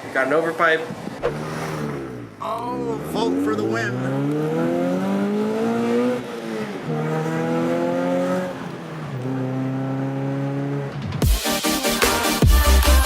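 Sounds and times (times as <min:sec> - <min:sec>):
car engine accelerating: 0:00.1 - 0:11.2
electronic dance music: 0:11.2 - 0:13.0.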